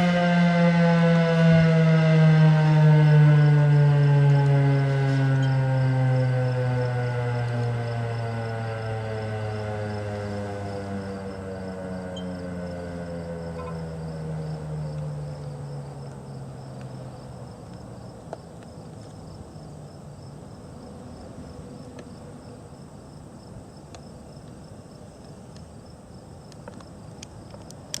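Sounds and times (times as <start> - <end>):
warning siren winding down: 0.0 - 17.1
insects chirping: 2.9 - 28.0.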